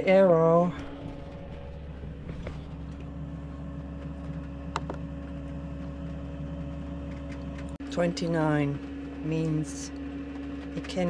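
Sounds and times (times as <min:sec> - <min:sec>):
blower fan hum: 0:00.0 - 0:11.0
heater click: 0:00.7 - 0:07.8.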